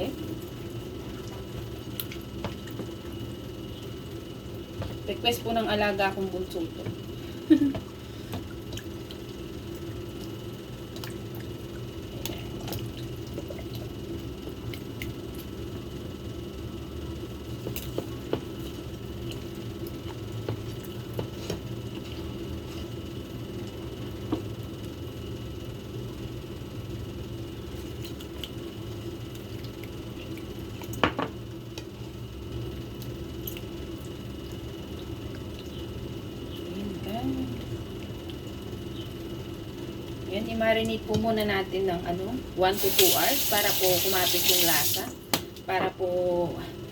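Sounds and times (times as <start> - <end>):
steady low hum: 0.0 - 46.9.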